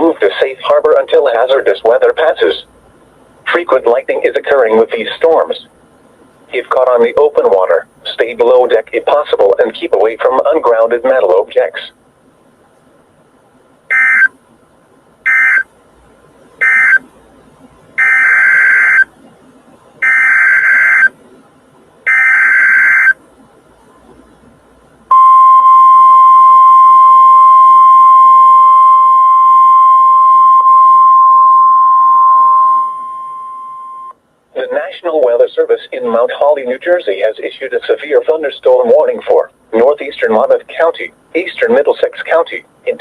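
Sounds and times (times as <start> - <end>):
steady loud attention tone: 13.9 - 14.3, 25.1 - 34.2.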